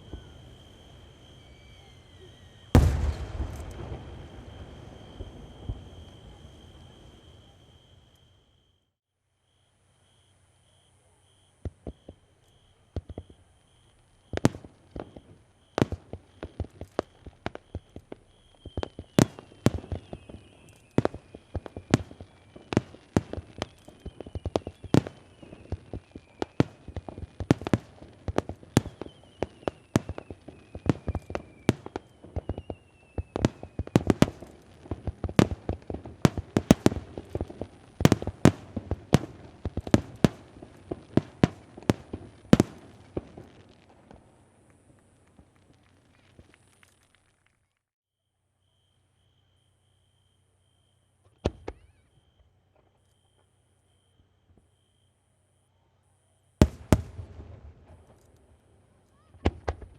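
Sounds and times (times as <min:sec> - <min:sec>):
firework shells bursting with bangs: 0:00.0 - 0:08.1, 0:11.6 - 0:47.3, 0:56.6 - 0:59.9
firework whistling falling in pitch: 0:00.0 - 0:43.7, 0:48.6 - 0:59.9.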